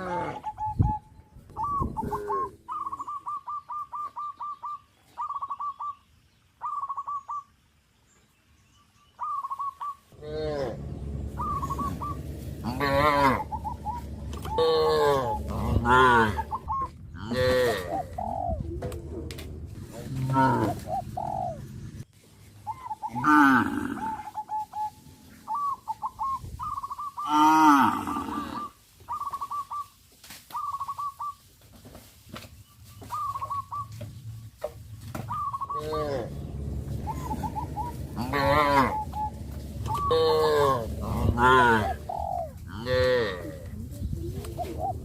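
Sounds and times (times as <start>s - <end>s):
cows mooing: 10.2s - 16.6s, 17.2s - 18.2s, 35.7s - 43.7s
bird short repeated calls: 11.3s - 18.6s, 35.2s - 43.7s.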